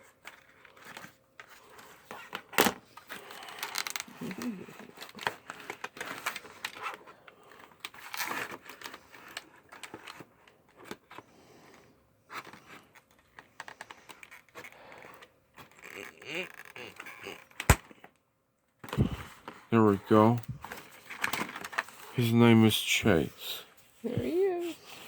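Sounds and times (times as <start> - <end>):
packaging clicking and rattling: 0.2 - 18.1, 20.6 - 22.2.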